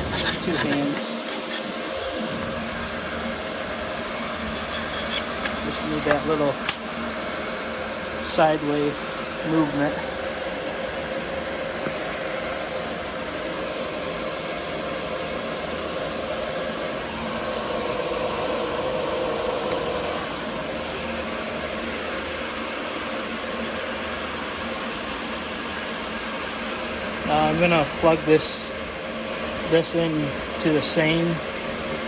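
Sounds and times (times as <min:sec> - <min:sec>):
cooling fans whirring: 0:00.0 - 0:32.0.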